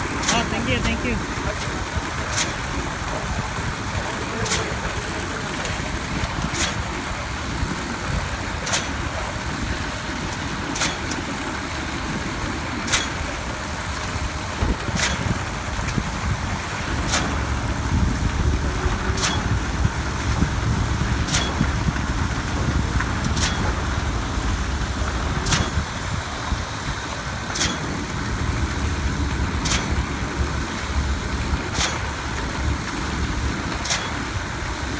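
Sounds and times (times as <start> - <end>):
diesel machinery rumbling: 0.0 - 34.9
sharp clicks: 29.6 - 30.1.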